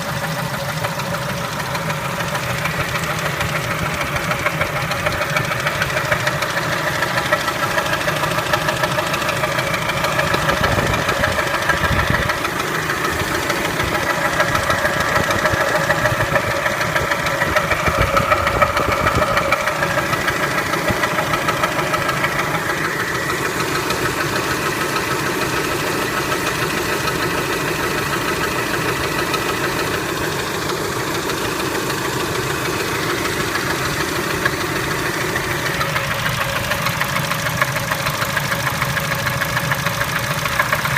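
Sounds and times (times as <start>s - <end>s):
car engine running with rapid knock: 0.0s - 40.9s.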